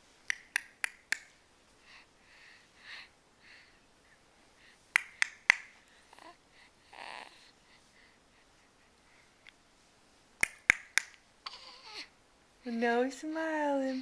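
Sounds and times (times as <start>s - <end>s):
faint soft sounds: 0.0s - 14.0s
sharp snapping clicks: 0.2s - 1.4s, 5.0s - 5.7s, 10.4s - 11.2s.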